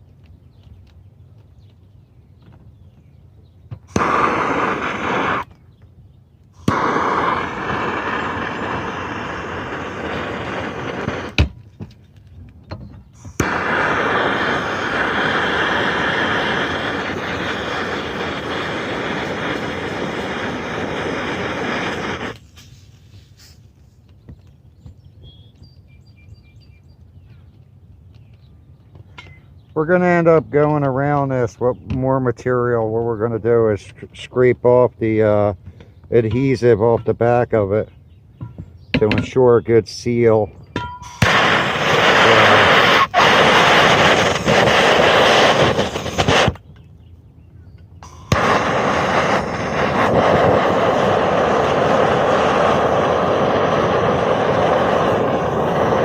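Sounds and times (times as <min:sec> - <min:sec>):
propane torch blasting: 0:03.7 - 0:05.6, 0:06.2 - 0:12.0, 0:12.8 - 0:23.7, 0:39.3 - 0:46.9, 0:48.0 - 0:56.0.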